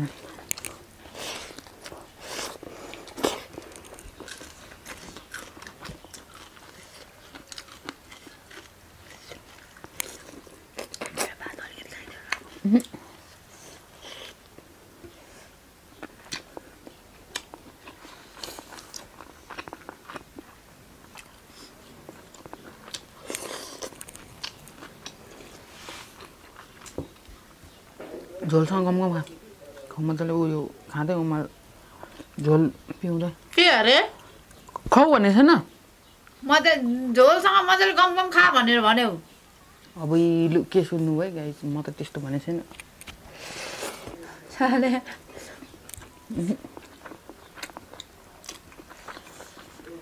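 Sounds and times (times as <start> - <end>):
chewing food: 0.0 - 30.0, 31.8 - 33.6, 34.2 - 35.0, 45.1 - 50.0.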